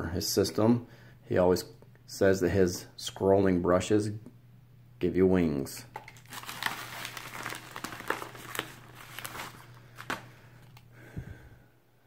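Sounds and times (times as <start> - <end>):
packaging crinkling: 5.9 - 10.9.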